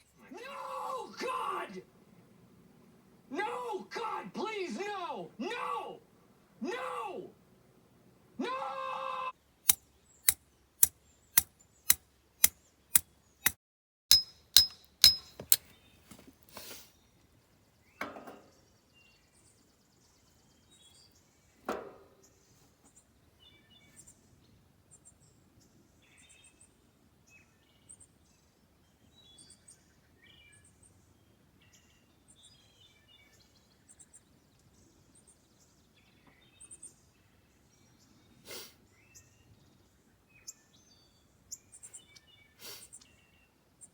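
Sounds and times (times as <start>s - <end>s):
faint birds chirping: 0.0s - 13.5s, 14.5s - 43.9s
hammer striking steel: 14.1s - 15.6s.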